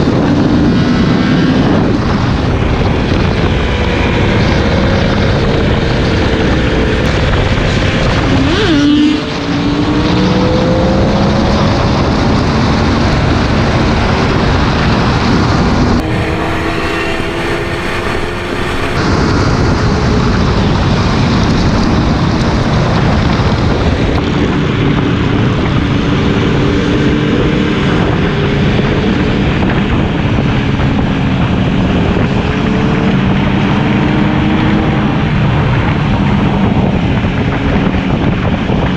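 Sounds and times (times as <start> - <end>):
motorcycle engine revving: 0.0 - 38.9
wind noise on microphone: 0.0 - 38.9.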